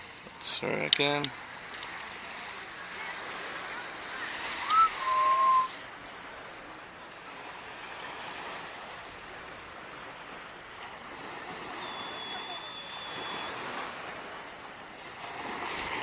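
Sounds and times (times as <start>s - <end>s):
waves washing on beach: 0.0s - 16.0s
short whistle-like tone: 4.6s - 5.8s, 11.7s - 13.7s.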